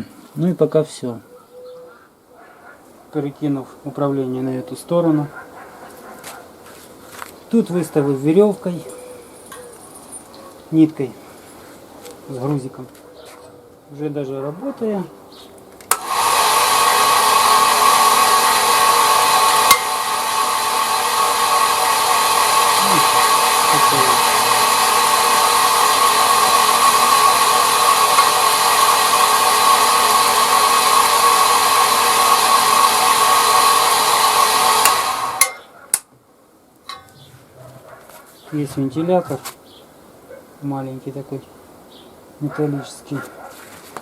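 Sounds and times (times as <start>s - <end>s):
motor click: 15.8s - 16.1s
lathe motor whining: 15.9s - 35.5s.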